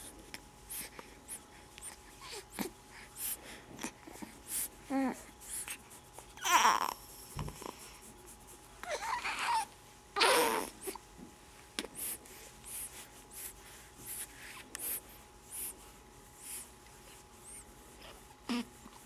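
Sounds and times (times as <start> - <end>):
infant snuffly breathing: 0.7 - 5.9, 11.8 - 15.8
baby vocal sound: 6.4 - 7.0, 8.8 - 11.0.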